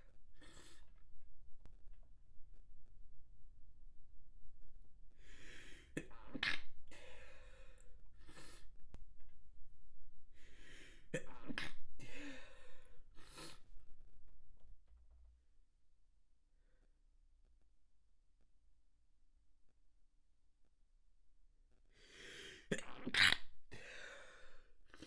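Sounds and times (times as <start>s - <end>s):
breathing: 5.2s - 6.0s, 6.9s - 8.8s, 10.3s - 11.1s, 12.0s - 13.8s, 21.9s - 22.7s, 23.7s - 25.0s
noisy in-breath: 5.2s - 6.3s, 6.9s - 8.7s, 10.3s - 11.1s, 12.0s - 13.7s, 21.9s - 22.7s, 23.7s - 25.0s.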